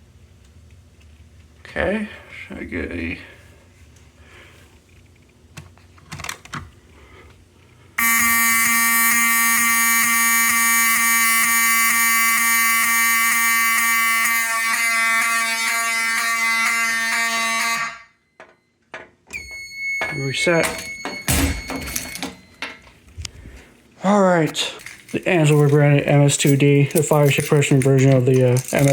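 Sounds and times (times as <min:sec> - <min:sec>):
buzzy fire alarm horn: 0:08.0 - 0:18.3, 0:19.3 - 0:22.5.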